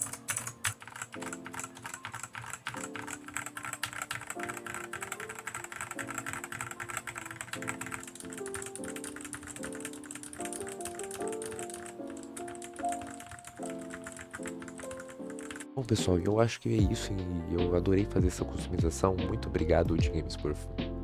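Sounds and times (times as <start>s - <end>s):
fast mechanical keyboard typing: 0.0s - 15.8s
background music: 0.0s - 21.0s.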